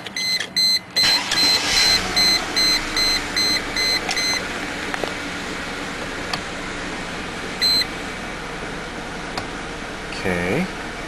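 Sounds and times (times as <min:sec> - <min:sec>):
car engine starting and idling: 0:00.0 - 0:11.0
dashboard warning chime beeping: 0:00.1 - 0:04.5, 0:07.6 - 0:07.9.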